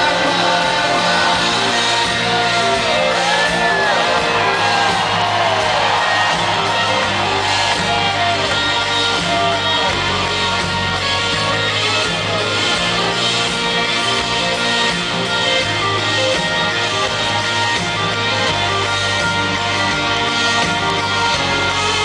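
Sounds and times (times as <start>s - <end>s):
crowd shouting: 0.0s - 12.8s
live rock band playing: 0.0s - 22.0s
sliding guitar lead lines: 0.0s - 22.0s.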